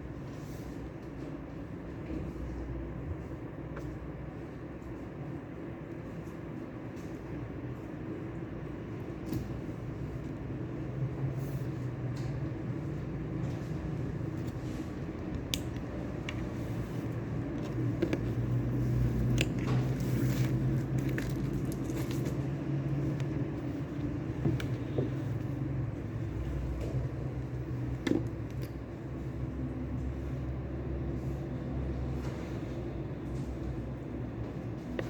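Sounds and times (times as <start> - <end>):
low rumbling room hum: 0.0 - 35.0.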